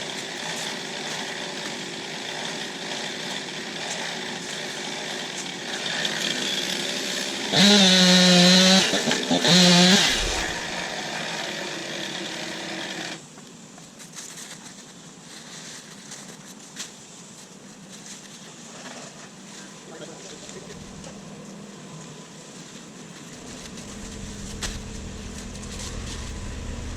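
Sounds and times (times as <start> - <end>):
chainsaw idling and revving: 0.0 - 13.2, 20.3 - 21.2, 23.2 - 26.9.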